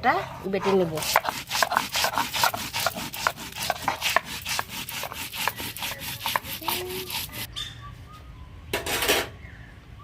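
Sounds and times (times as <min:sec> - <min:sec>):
stone pestle scraping on grinding stone: 0:00.5 - 0:07.5.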